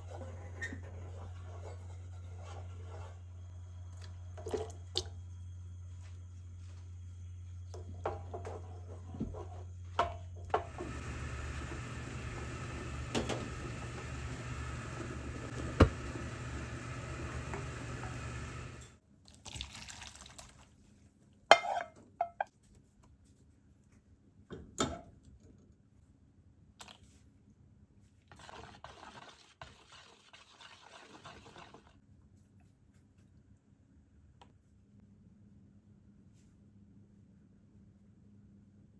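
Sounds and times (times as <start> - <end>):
water running from tap: 10.5 - 18.9.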